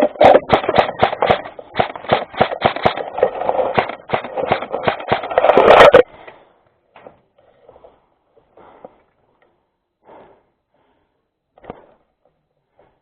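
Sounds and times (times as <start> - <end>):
airsoft guns firing: 0.0 - 6.0.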